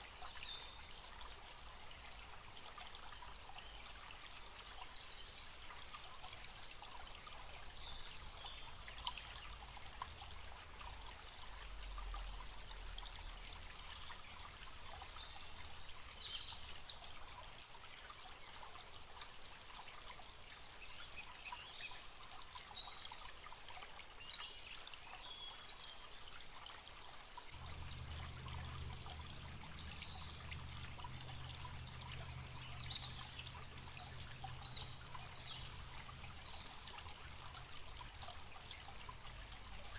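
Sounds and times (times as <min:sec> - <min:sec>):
stream trickling and babbling: 0:00.0 - 0:39.9
faint low hum: 0:27.5 - 0:39.9.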